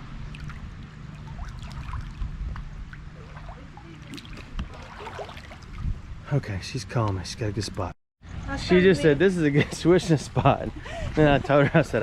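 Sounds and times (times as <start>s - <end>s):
low steady rumble: 0.0s - 9.4s
creek water sloshing and trickling: 0.2s - 6.3s.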